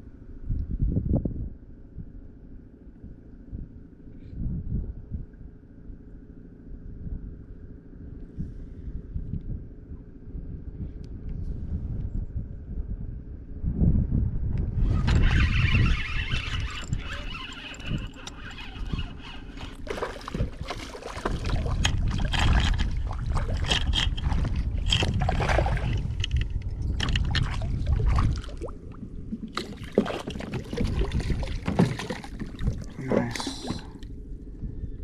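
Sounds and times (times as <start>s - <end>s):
wind buffeting microphone: 8.3s - 35.0s
water sloshing and splashing: 14.9s - 34.1s.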